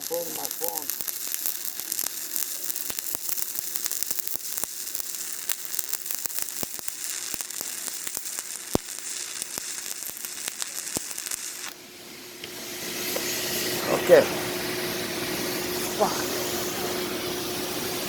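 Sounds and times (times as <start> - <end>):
sharp welding pops: 0.0 - 11.8
welding arc crackling: 0.0 - 18.0.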